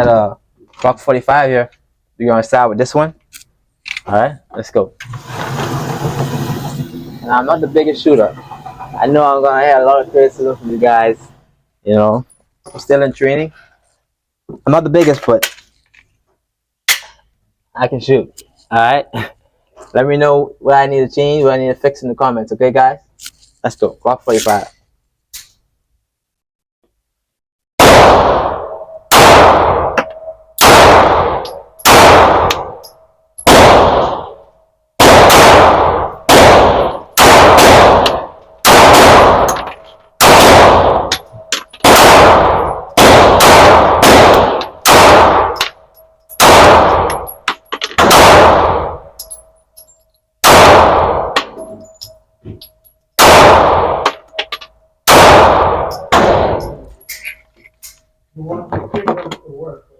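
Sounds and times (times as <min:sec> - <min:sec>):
pistol shots echoing: 0:27.8 - 0:32.8, 0:33.4 - 0:34.4, 0:35.0 - 0:47.4, 0:48.0 - 0:49.1, 0:50.4 - 0:51.6, 0:53.2 - 0:54.3, 0:55.1 - 0:56.8.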